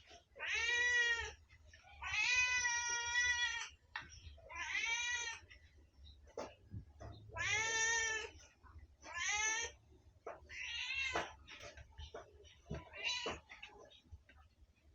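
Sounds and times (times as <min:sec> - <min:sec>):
cat meowing: 0:00.4 - 0:01.4, 0:02.0 - 0:03.7, 0:04.5 - 0:05.4, 0:07.3 - 0:08.4, 0:09.0 - 0:09.8, 0:10.5 - 0:11.2.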